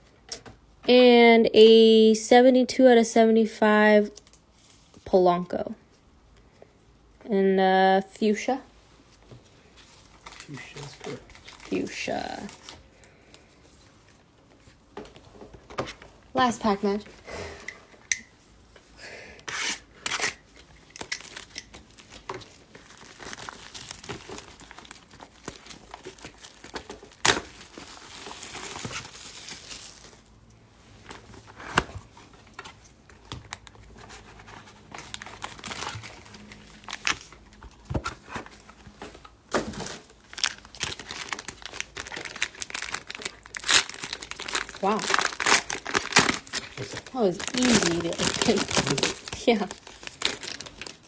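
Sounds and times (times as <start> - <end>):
card pack wrapper crinkling: 20.2 - 30.2, 32.5 - 38.9, 39.8 - 51.0.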